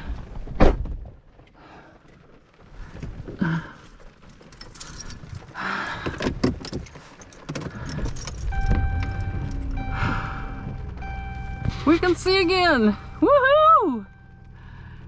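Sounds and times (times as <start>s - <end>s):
low engine rumble: 1.5s - 15.0s
keys jangling: 4.4s - 5.5s, 6.6s - 9.2s
electronic warning chime: 8.4s - 14.8s.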